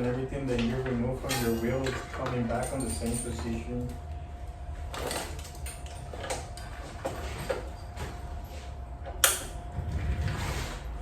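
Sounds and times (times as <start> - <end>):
faint steady hum: 0.0 - 11.0
clicks of bicycle parts handled: 9.2 - 9.6.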